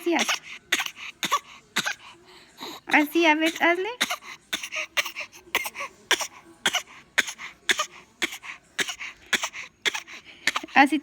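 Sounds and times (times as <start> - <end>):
child coughing: 0.0 - 2.1, 2.9 - 11.0.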